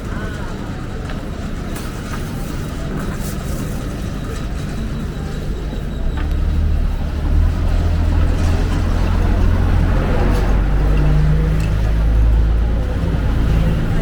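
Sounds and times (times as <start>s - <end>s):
street noise: 0.0s - 14.0s
large vehicle rumbling past: 6.0s - 14.0s.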